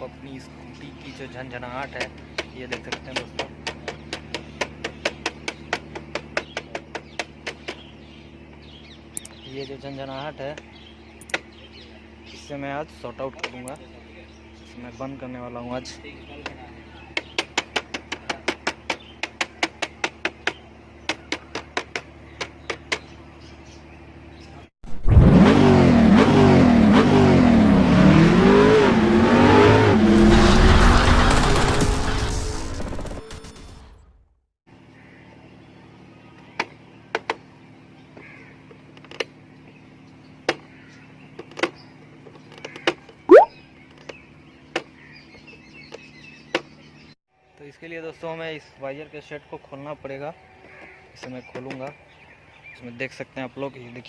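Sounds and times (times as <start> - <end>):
scooter engine running: 2.1 - 9.5
short rising squeak: 43.3 - 43.5.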